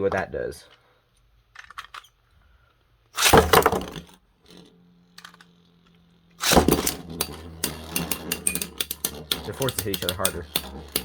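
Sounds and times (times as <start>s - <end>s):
tops knocking together: 3.2s - 4.2s, 6.4s - 11.0s
spinning tops clattering into bowl: 3.2s - 5.6s, 6.4s - 11.0s
spinning tops humming: 3.2s - 11.0s
sharp clicks: 6.4s - 11.0s.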